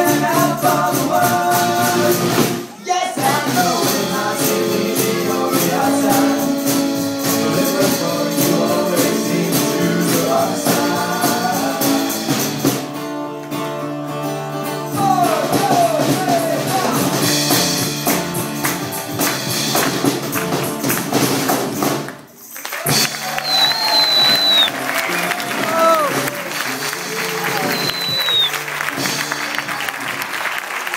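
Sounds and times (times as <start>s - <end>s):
person singing: 0.0s - 12.5s, 14.9s - 17.2s
live band playing: 0.0s - 30.9s.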